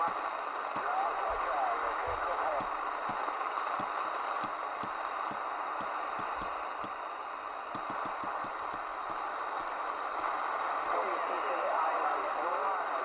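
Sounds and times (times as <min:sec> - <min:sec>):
sharp crackle clicks: 0:00.0 - 0:01.0, 0:02.3 - 0:07.1, 0:07.7 - 0:11.0
radio static hiss: 0:00.0 - 0:13.0.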